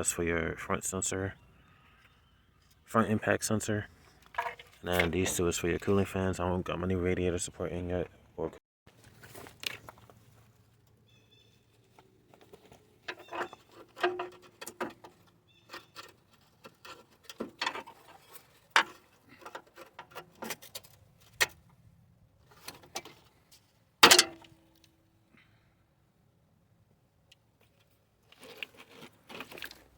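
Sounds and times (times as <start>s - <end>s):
sharp metallic clank: 24.0s - 24.5s.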